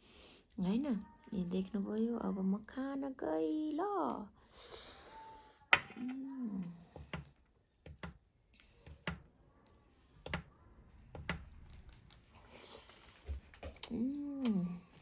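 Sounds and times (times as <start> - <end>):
chewing: 11.4 - 15.0.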